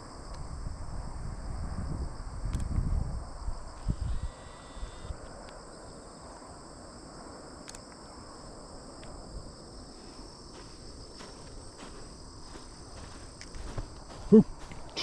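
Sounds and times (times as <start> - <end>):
crickets trilling: 0.0 - 15.0
faint clicks: 7.6 - 8.0.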